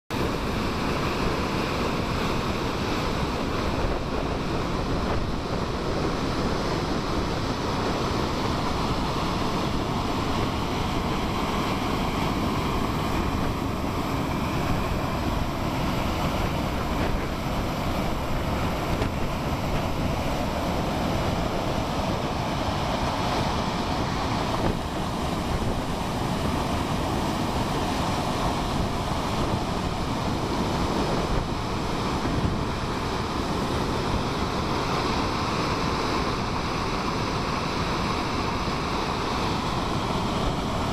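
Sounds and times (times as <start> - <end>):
river rushing: 0.1 - 40.9
wind on microphone: 0.1 - 40.9.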